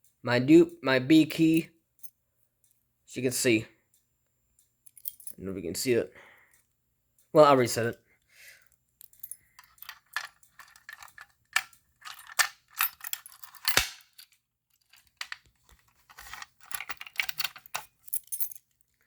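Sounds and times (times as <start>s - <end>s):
keys jangling and clicking: 4.9s - 5.4s, 9.0s - 19.0s.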